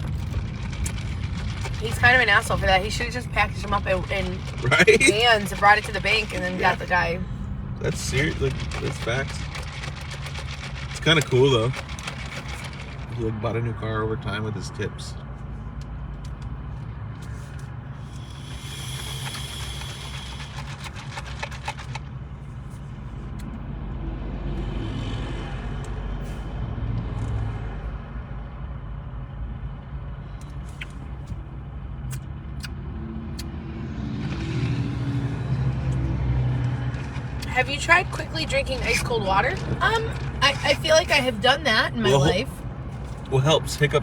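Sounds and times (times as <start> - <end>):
car road and engine rumble: 0.0 - 44.0
rustling and clicking: 8.1 - 13.2, 19.2 - 22.1.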